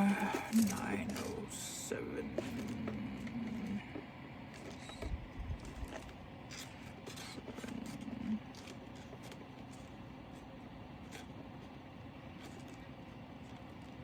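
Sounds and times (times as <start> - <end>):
plastic bags rustling: 0.0 - 3.8
steady low hum: 0.0 - 14.0.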